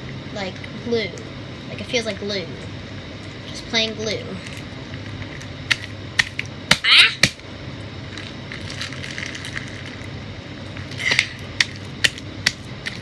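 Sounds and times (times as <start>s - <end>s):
plastic bag crinkle: 8.1s - 10.2s.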